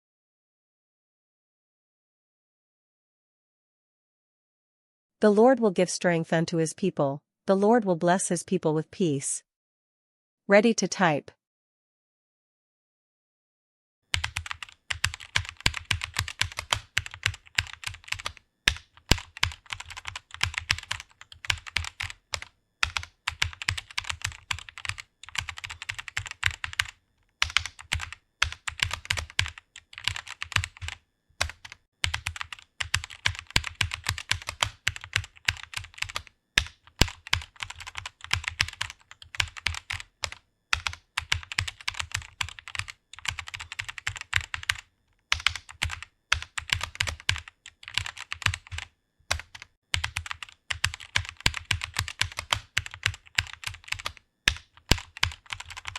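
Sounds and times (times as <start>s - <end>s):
fast typing on keyboard: 14.1s - 55.9s.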